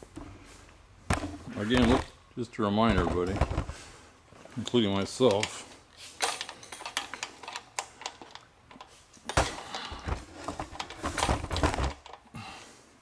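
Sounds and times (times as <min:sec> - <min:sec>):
dull thumps: 0:01.0 - 0:02.2, 0:02.8 - 0:03.9
rustling: 0:02.8 - 0:07.6.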